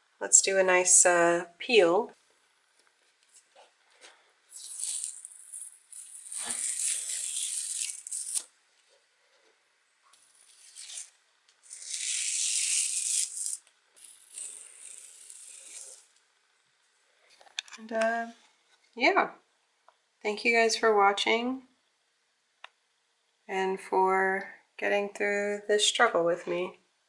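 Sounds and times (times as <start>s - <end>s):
tape ripping off paper: 4.5s - 8.6s, 10.2s - 16.1s.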